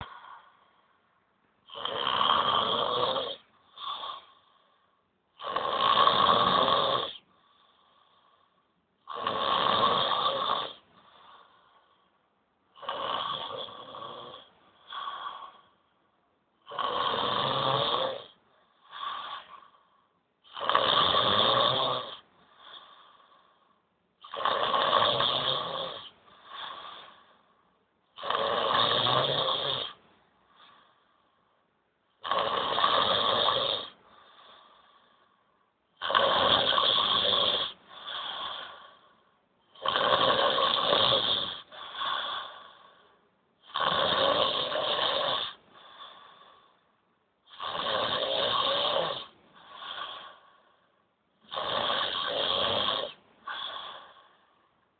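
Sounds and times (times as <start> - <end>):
person snoring loudly: 1.6 - 4.4, 5.4 - 7.2, 9.0 - 11.6, 12.7 - 15.7, 16.6 - 19.7, 20.4 - 23.3, 24.2 - 27.2, 28.1 - 30.0, 32.2 - 34.6, 36.0 - 39.0, 39.7 - 43.0, 43.6 - 46.6, 47.5 - 50.4, 51.4 - 54.4.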